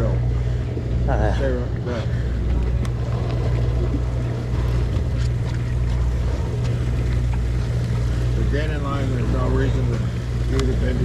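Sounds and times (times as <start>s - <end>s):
boat engine droning: 0.0s - 11.0s
faint clicks: 10.4s - 10.8s.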